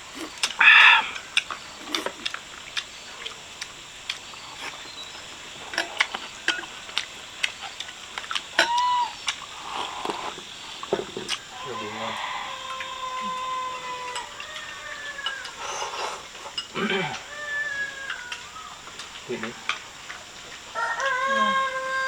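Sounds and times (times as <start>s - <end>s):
animal calling: 0.0s - 2.4s, 8.5s - 19.8s.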